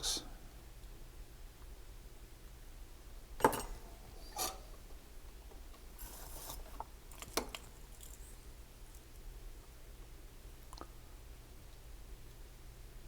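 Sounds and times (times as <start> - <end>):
short scraping rub: 6.0 - 6.8.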